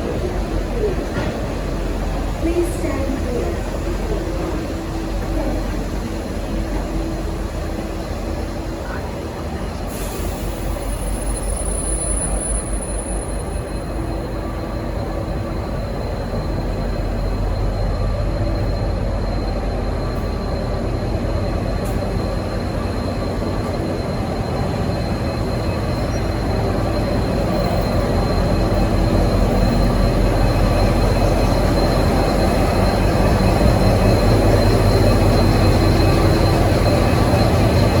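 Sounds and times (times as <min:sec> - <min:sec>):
locomotive engine drone: 0:00.0 - 0:38.0.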